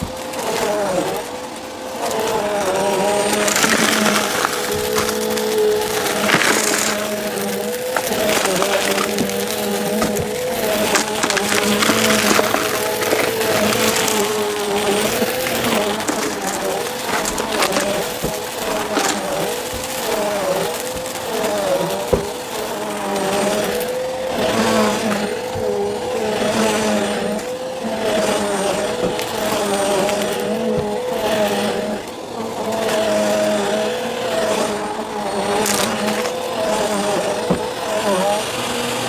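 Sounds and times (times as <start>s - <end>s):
vacuum cleaner motor whine: 0.0s - 39.0s.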